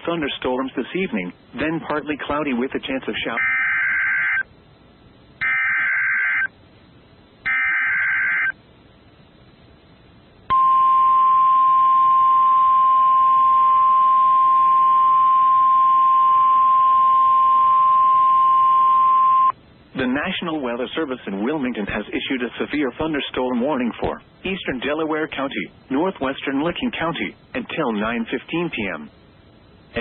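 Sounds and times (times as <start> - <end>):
steady warning alarm tone: 3.3 - 4.5, 5.4 - 6.5, 7.4 - 8.6, 10.5 - 19.6.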